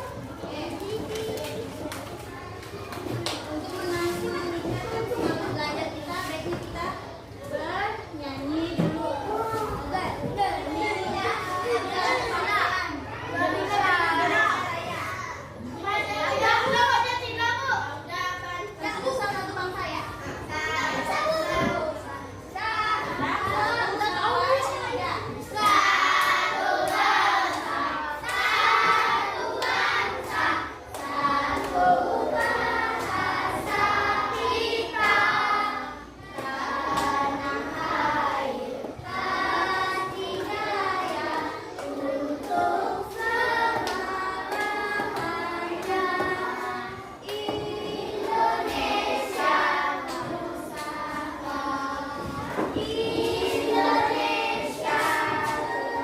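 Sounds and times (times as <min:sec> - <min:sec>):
children singing in unison: 0:20.6 - 0:56.0.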